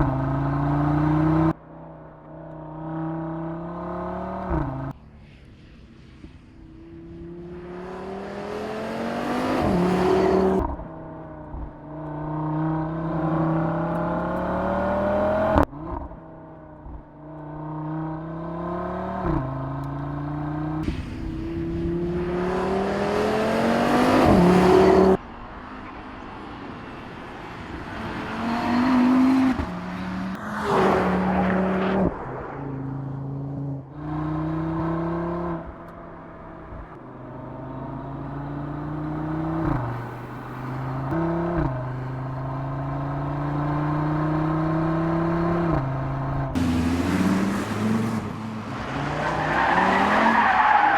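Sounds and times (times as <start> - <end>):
car engine revving: 0.0 - 5.0, 6.8 - 50.9.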